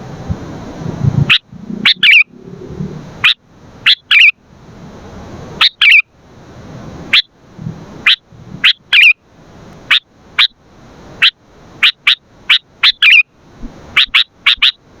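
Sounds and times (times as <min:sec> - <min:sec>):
bulbul calling: 0:01.3 - 0:04.4, 0:05.6 - 0:06.1, 0:08.0 - 0:09.2, 0:09.9 - 0:10.6, 0:11.2 - 0:13.3, 0:13.9 - 0:14.8.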